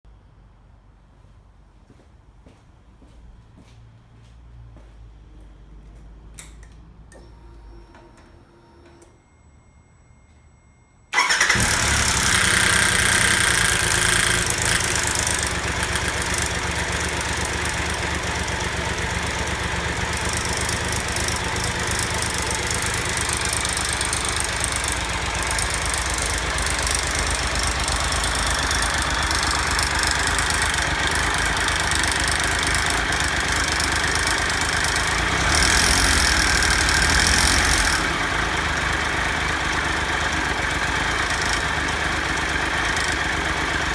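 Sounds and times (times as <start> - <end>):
motorcycle engine running: 11.2 - 43.9.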